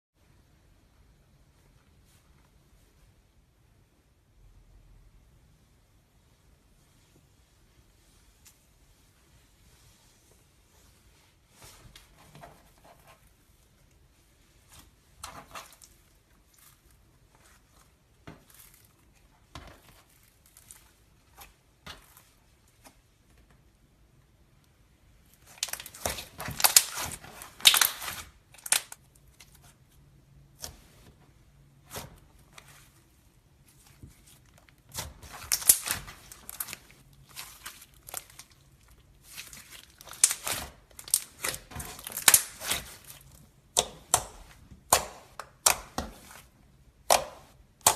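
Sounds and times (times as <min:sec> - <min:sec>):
slime crackling and popping: 0:25.4 - 0:29.7, 0:33.6 - 0:47.9.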